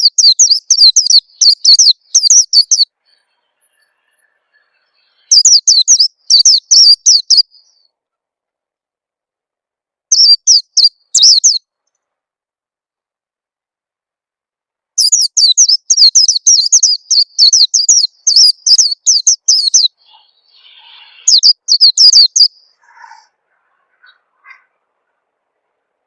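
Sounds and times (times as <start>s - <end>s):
bird chirping rapidly: 0.0s - 7.9s, 10.1s - 11.6s, 15.0s - 25.7s.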